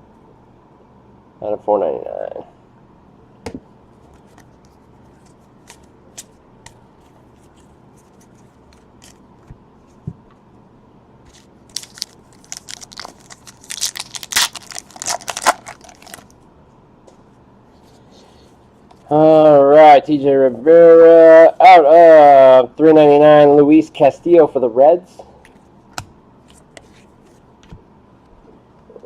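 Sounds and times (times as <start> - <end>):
foil wrapper crinkling and tearing: 11.3 - 16.3.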